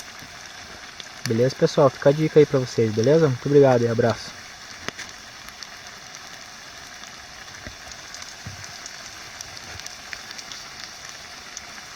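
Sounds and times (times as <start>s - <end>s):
campfire hissing and crackling: 0.0s - 11.9s.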